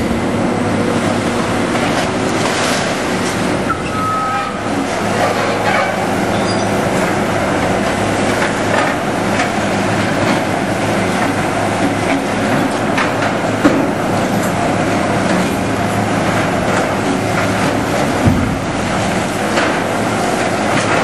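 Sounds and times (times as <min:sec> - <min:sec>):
diesel machinery drone: 0:00.0 - 0:21.0
high squeal: 0:03.7 - 0:04.7.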